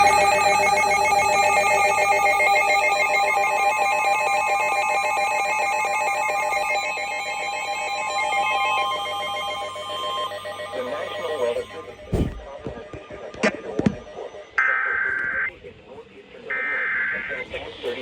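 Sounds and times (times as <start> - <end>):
electronic alert tone warbling: 0.0 - 12.6.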